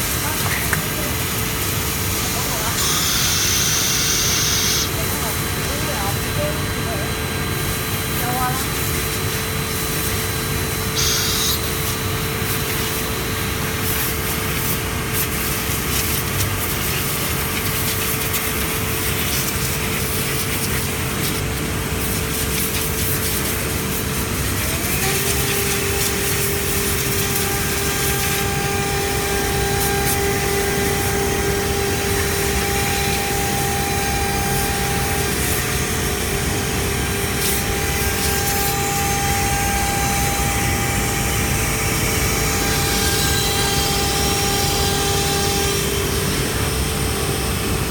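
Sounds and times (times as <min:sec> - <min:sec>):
cnc machine running: 0:00.0 - 0:15.8, 0:23.7 - 0:47.9
spindle whine: 0:24.7 - 0:47.9.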